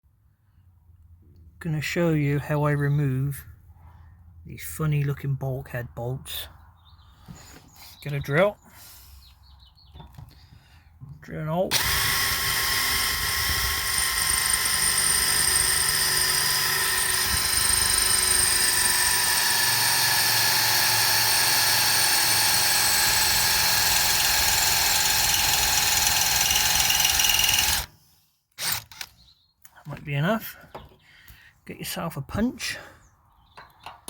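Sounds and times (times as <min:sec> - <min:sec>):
power drill drilling into metal: 0:11.7 - 0:27.9, 0:28.6 - 0:29.1.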